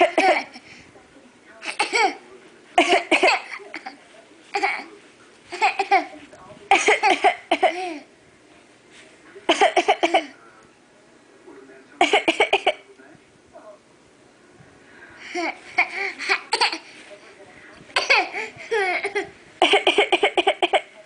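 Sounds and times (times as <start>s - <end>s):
person fake-coughing: 2.8s - 3.9s, 6.7s - 8.0s, 9.5s - 10.4s, 12.0s - 12.8s, 18.0s - 20.9s.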